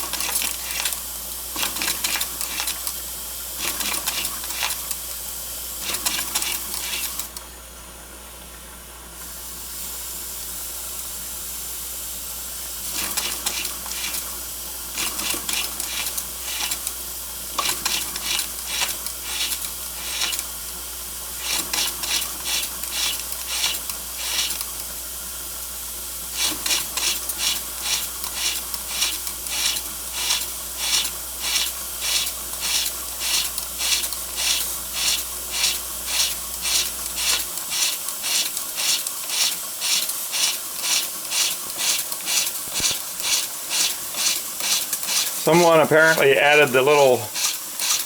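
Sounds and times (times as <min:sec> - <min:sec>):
toy steam engine puffing: 0:05.8 - 0:07.3, 0:12.8 - 0:20.5, 0:21.3 - 0:25.0, 0:26.3 - 0:48.0
steady steam hiss: 0:26.4 - 0:48.0.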